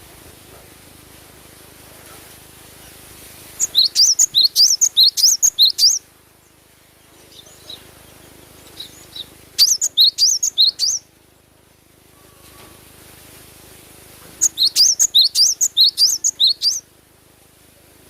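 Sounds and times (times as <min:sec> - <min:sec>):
bird chirping: 0:03.6 - 0:11.1, 0:14.4 - 0:16.9.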